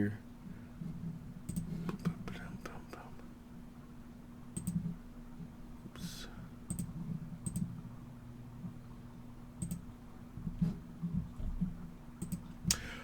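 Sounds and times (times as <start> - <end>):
low steady hum: 0.0 - 13.0
computer mouse clicking: 1.5 - 2.2, 4.6 - 4.8, 6.7 - 7.7, 9.6 - 9.9, 12.2 - 12.8.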